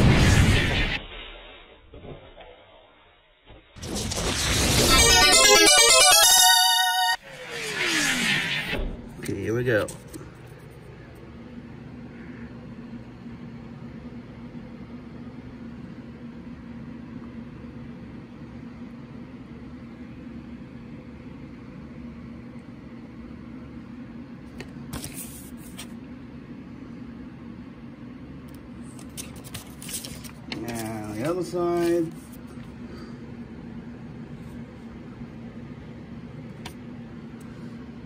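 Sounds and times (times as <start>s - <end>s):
steady low hum: 7.3s - 38.0s
paper rustling: 24.9s - 26.0s, 28.9s - 32.5s.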